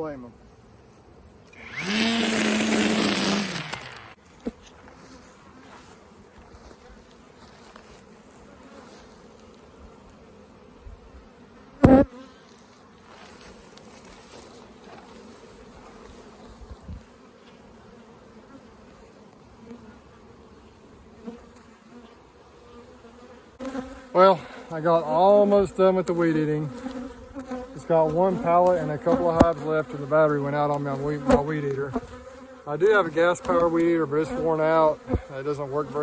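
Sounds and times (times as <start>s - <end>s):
bees buzzing: 0.7s - 36.0s
string trimmer running: 1.5s - 4.7s.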